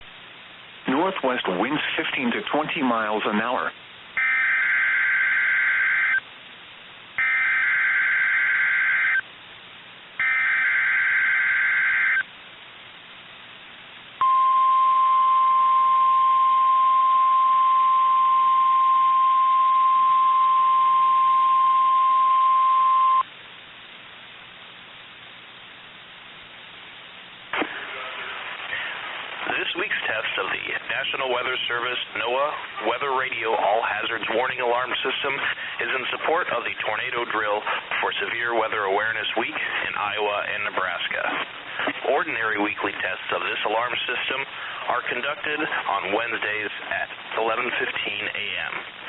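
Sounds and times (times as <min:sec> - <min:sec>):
steady high alarm tone: 0:04.2 - 0:06.2, 0:07.2 - 0:09.2, 0:10.2 - 0:12.2, 0:14.2 - 0:23.2.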